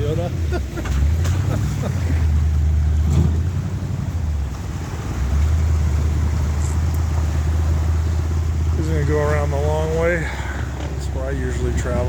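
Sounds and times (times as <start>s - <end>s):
off-road vehicle engine rumble: 0.0s - 12.0s.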